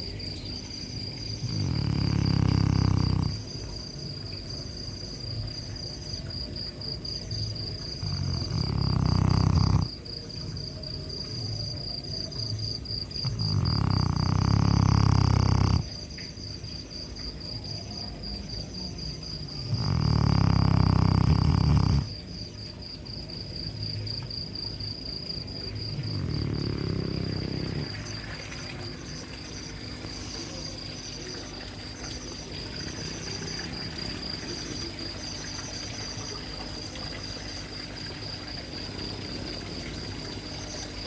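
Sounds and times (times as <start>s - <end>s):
crickets chirping: 0.0s - 41.0s
dog snoring: 1.4s - 3.7s, 7.7s - 10.1s, 13.0s - 15.9s, 19.4s - 22.2s, 25.7s - 28.8s.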